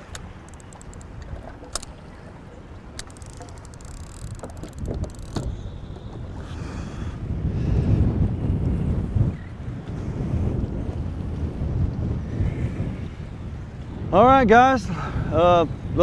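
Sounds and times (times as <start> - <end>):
clicks and light knocks: 0.0 - 2.2, 2.9 - 6.1
wind buffeting microphone: 0.0 - 16.0.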